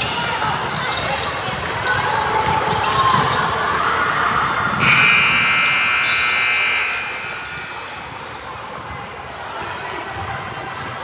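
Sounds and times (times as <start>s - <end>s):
scoreboard buzzer: 4.8s - 8.0s
gym noise: 4.8s - 8.4s.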